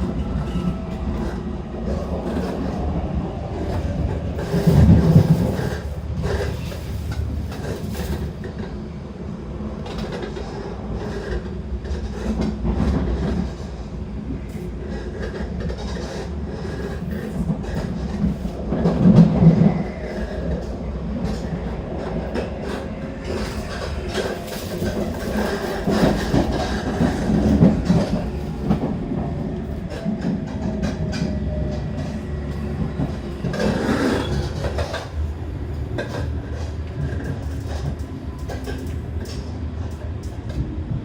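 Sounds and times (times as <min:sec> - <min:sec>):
train cabin rumble: 0:00.0 - 0:41.0.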